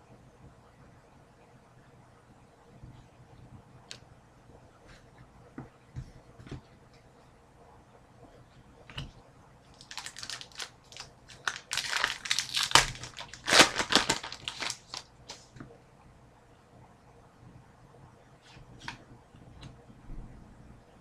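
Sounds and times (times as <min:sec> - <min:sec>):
plastic wrapper crinkling: 0:09.7 - 0:15.4.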